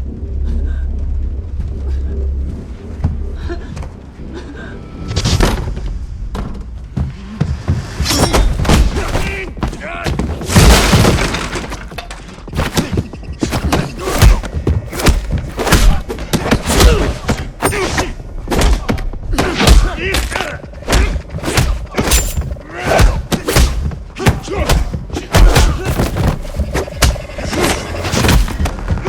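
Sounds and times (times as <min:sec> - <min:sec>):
punch and kick impacts: 0:08.0 - 0:11.7, 0:12.6 - 0:20.0, 0:20.9 - 0:27.2, 0:28.0 - 0:28.8.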